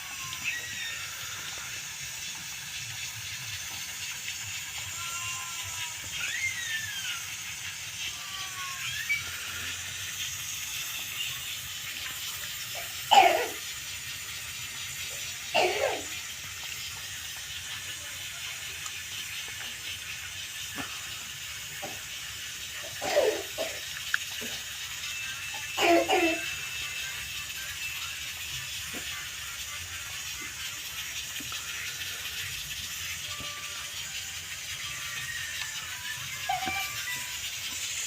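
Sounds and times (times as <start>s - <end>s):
steady hiss: 0.0s - 38.0s
baby monkey squealing: 0.2s - 1.3s, 5.0s - 7.3s, 8.1s - 9.7s.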